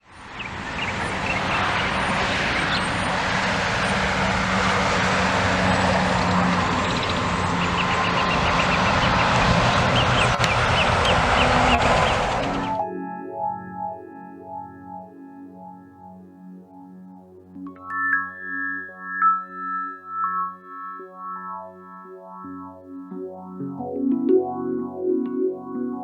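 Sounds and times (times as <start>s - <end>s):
rushing outdoor noise: 0.0s - 12.8s.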